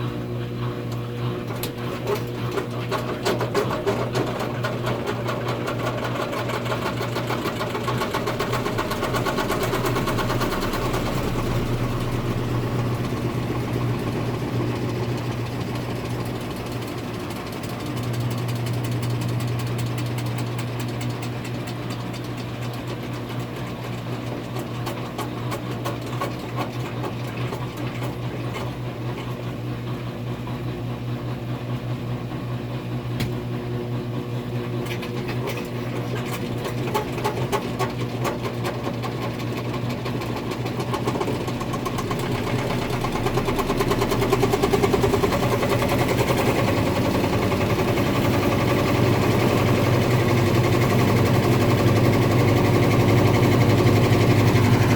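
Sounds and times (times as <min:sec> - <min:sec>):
machine running with fast rhythm: 0:05.0 - 0:21.2, 0:38.9 - 0:54.9.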